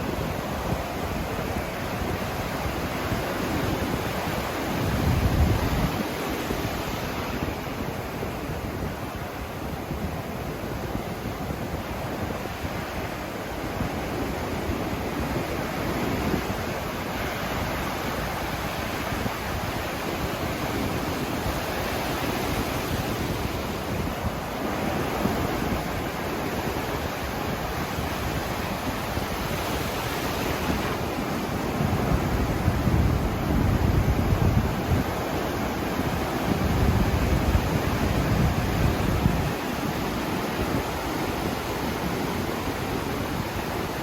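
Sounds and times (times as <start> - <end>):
wind on the microphone: 0.0 - 44.0
ocean surf breaking: 12.3 - 44.0.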